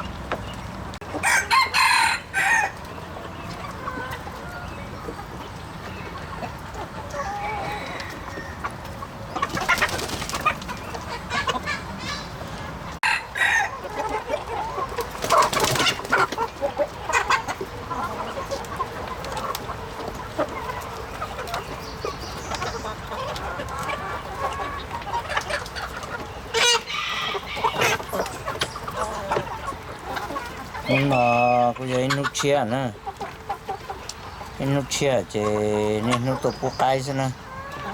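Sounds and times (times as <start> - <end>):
chickens clucking: 0.0 - 37.9
rooster crowing: 1.2 - 2.8, 7.2 - 8.6, 13.0 - 13.8.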